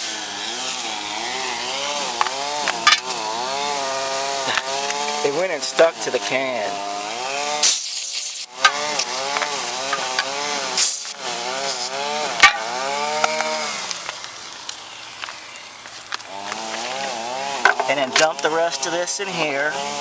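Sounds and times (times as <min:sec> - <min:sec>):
small engine revving: 0:00.0 - 0:15.6, 0:16.2 - 0:20.0
sharp knocks: 0:08.6 - 0:10.3, 0:12.4 - 0:13.0.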